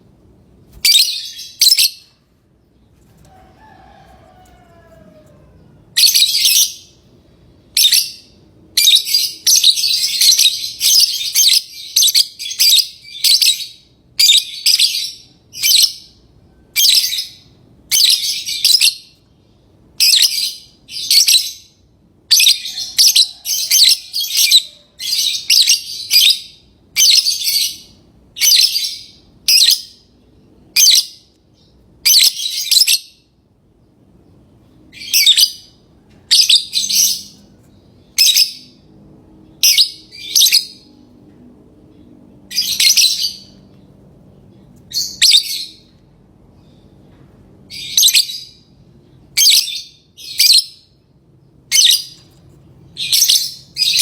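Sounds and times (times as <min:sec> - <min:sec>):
lovebirds shrill chirps: 0:00.7 - 0:02.2, 0:04.4 - 0:07.0, 0:20.0 - 0:30.0, 0:30.8 - 0:33.2, 0:34.9 - 0:38.8, 0:39.6 - 0:40.9, 0:42.5 - 0:43.7, 0:44.8 - 0:45.9, 0:49.3 - 0:50.9, 0:51.7 - 0:54.0.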